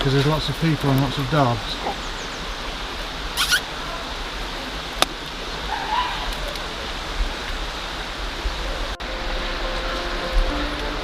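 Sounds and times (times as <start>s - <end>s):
waterfall and river rushing: 0.8s - 11.0s
high squeak: 3.4s - 3.6s.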